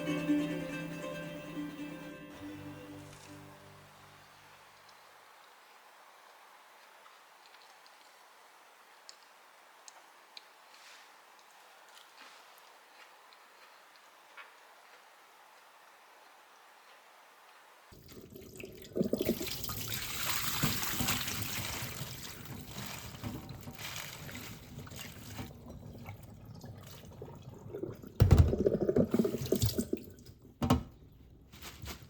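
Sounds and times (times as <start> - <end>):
water running from tap into sink: 18.0 - 30.1.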